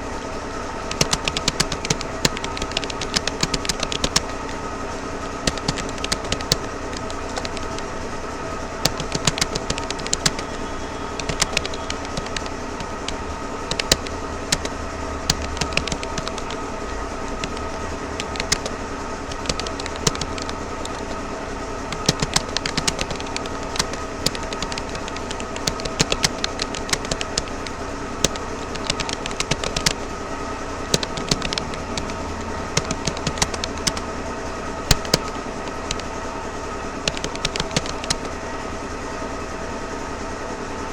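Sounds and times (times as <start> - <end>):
steady droning hum: 0.0 - 40.9
keyboard key clicks: 0.9 - 4.6, 5.2 - 7.9, 8.8 - 16.7, 17.3 - 21.2, 21.9 - 30.0, 30.9 - 34.1, 34.9 - 36.1, 37.1 - 38.4.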